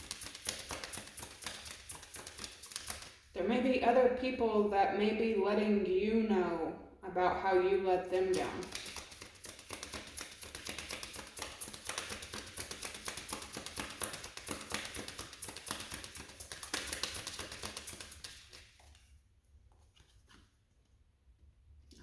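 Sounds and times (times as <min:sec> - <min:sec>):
cards being shuffled by hand: 0:00.0 - 0:03.3, 0:08.3 - 0:18.8.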